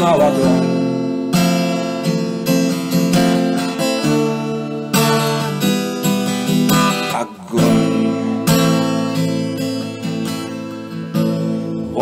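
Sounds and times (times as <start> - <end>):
acoustic guitar strumming chords: 0.0 - 12.0
person singing: 6.7 - 9.0.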